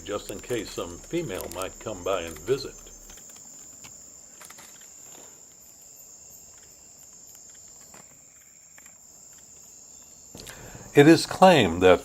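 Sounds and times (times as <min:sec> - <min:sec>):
insect chorus drone: 0:00.0 - 0:12.0
soft clicks and rustles: 0:00.1 - 0:10.6.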